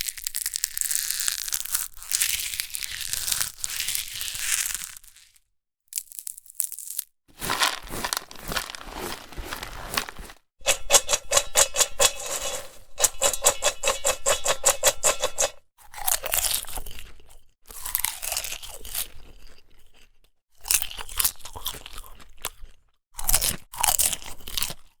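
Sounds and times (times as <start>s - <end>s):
crunching and crinkling: 6.0s - 16.6s.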